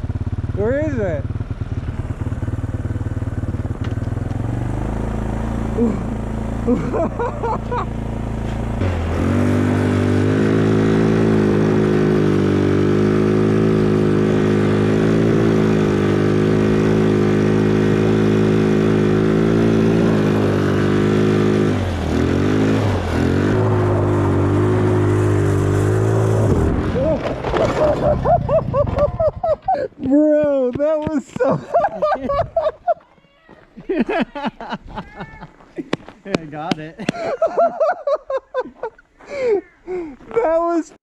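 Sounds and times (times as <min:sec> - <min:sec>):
engine revving and idling: 0:00.0 - 0:29.8.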